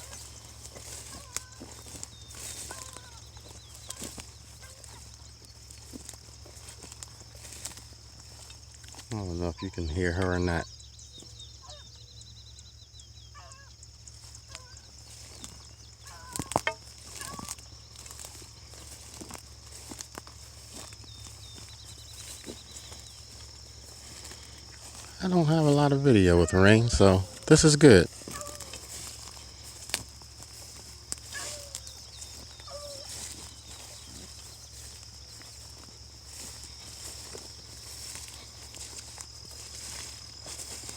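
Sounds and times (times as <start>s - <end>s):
faint bird chirps: 0.0s - 7.7s, 8.3s - 40.9s
distant hound barking: 25.6s - 27.5s, 31.3s - 31.8s
hunting dog baying faintly: 26.3s - 27.4s, 31.3s - 31.8s.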